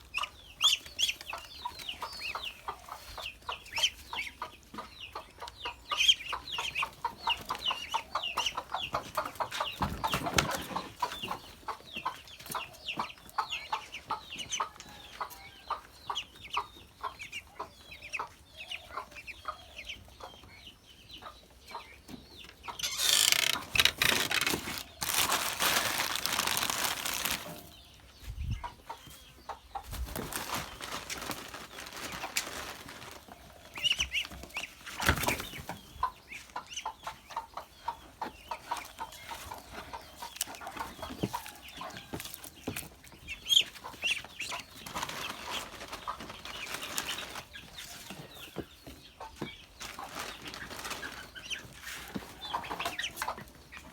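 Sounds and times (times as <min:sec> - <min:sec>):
ducks calling: 0:22.7 - 0:27.3
loud rustling: 0:22.8 - 0:27.6.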